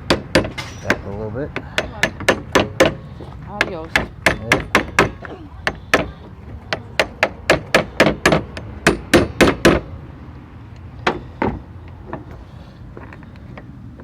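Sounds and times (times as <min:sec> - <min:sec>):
hammer striking metal part: 0:00.1 - 0:03.0, 0:03.6 - 0:06.1, 0:06.7 - 0:09.8.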